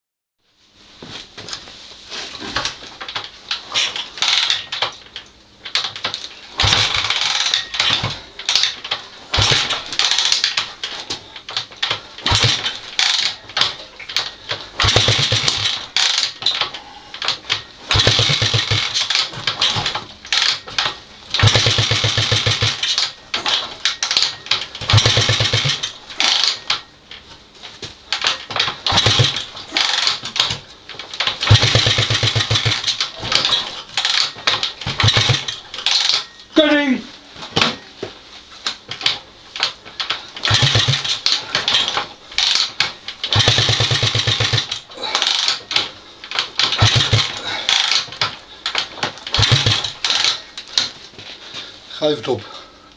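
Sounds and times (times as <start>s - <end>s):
motorcycle engine kicked over: 5.6s - 26.8s, 27.8s - 36.4s, 38.9s - 51.0s.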